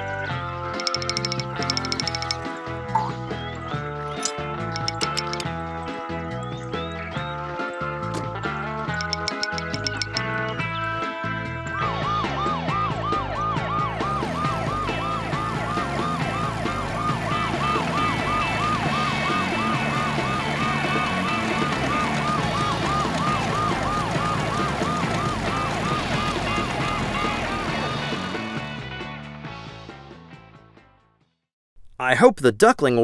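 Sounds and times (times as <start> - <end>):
ambulance siren yelping: 0.8 - 2.4, 4.2 - 5.4, 9.0 - 10.2, 11.9 - 28.5
background music: 0.8 - 30.4.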